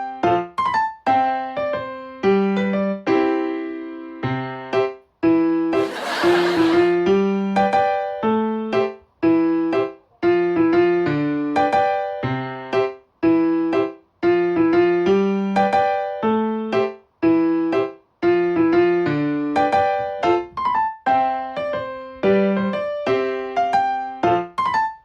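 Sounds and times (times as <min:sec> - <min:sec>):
bouncy piano tune: 0:05.8 - 0:25.0.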